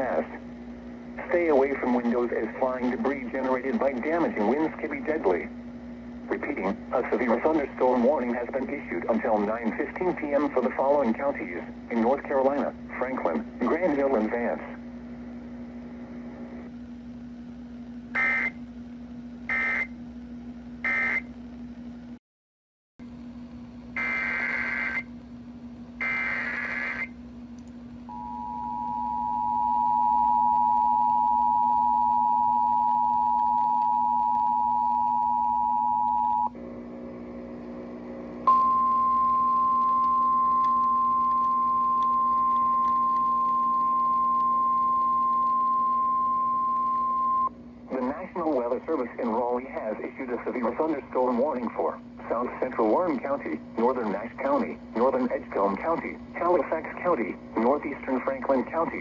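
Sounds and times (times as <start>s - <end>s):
low steady hum: 0.0s - 22.2s, 23.0s - 59.0s
screeching data bursts: 26.0s - 27.1s.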